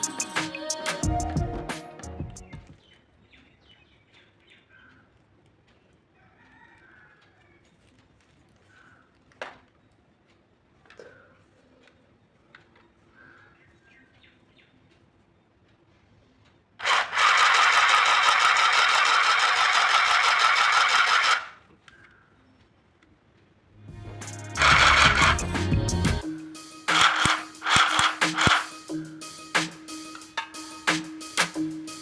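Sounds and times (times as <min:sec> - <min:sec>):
handheld sewing machine buzzing: 0:16.8 - 0:21.6, 0:24.6 - 0:25.6, 0:26.9 - 0:28.8.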